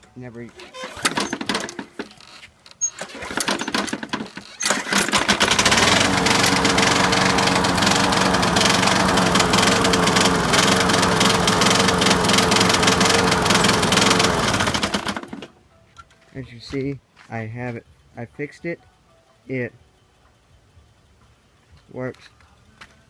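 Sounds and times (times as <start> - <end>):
lawn mower engine running: 1.0 - 1.9, 3.0 - 15.5.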